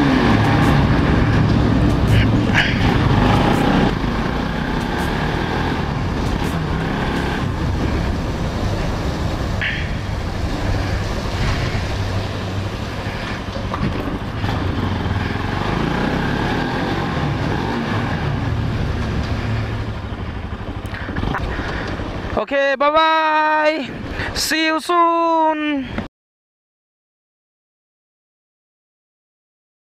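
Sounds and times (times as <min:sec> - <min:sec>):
motorcycle engine running: 0:00.0 - 0:22.3
road noise: 0:00.0 - 0:26.1.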